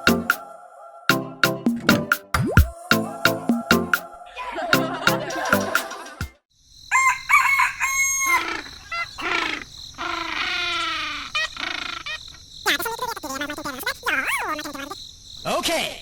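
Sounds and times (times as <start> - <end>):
rooster crowing: 0.0 - 1.1, 6.9 - 8.9
background music: 0.0 - 6.4.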